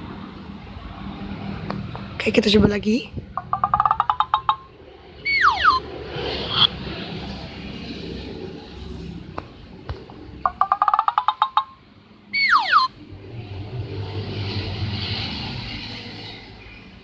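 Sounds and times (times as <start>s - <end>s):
whistle-like tone gliding down: 5.2s - 5.8s, 12.4s - 13.0s
short pitched beeps: 5.3s - 5.8s.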